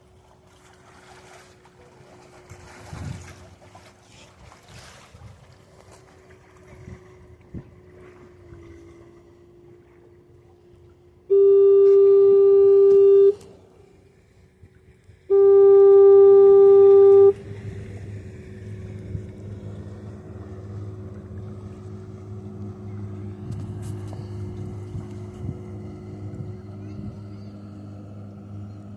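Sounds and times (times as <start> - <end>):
fog horn blasts: 11.2 - 13.6, 15.2 - 18.0.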